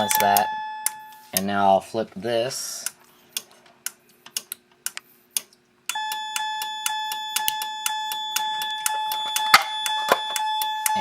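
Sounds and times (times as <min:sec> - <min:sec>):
fire alarm chime ringing: 0:00.0 - 0:01.4, 0:05.9 - 0:11.0
sharp clicks: 0:02.8 - 0:11.0.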